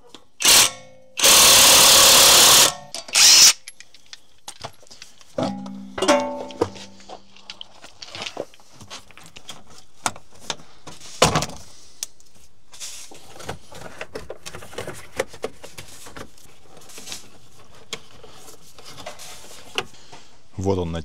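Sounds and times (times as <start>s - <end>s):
hardware clicks and knocks: 2.7s - 8.4s.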